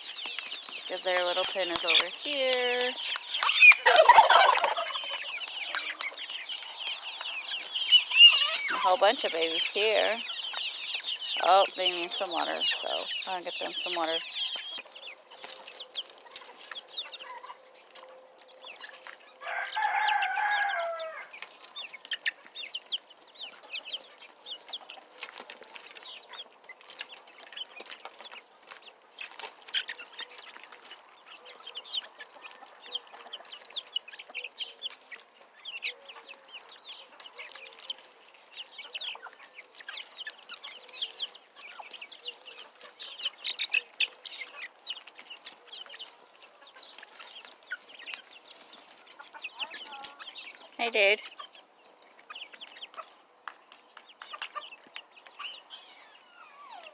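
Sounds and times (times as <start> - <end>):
baby chicks peeping: 0.0 - 56.9
chickens clucking: 0.0 - 56.9
rooster crowing: 19.4 - 21.3.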